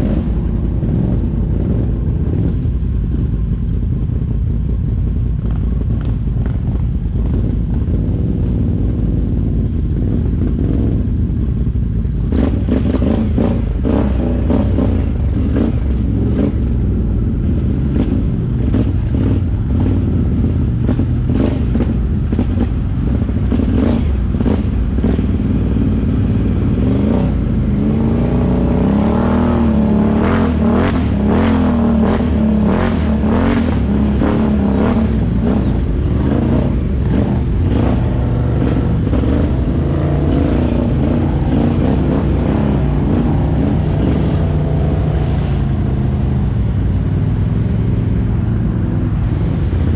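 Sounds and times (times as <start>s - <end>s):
atv engine revving: 12.1s - 46.8s.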